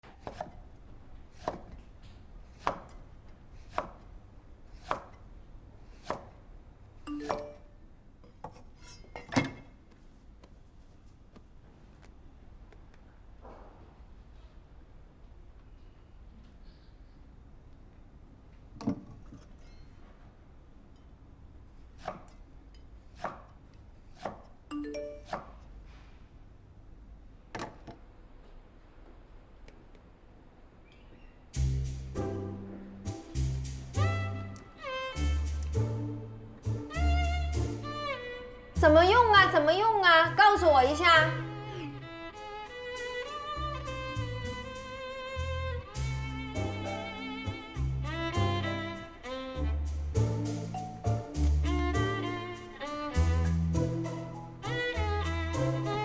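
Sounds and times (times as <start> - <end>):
electronic chime: 7.1 - 7.7.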